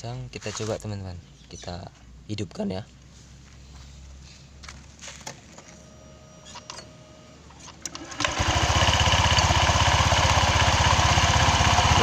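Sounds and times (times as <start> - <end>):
faint steady hum: 0.0 - 8.0
scooter engine starting: 7.7 - 12.0.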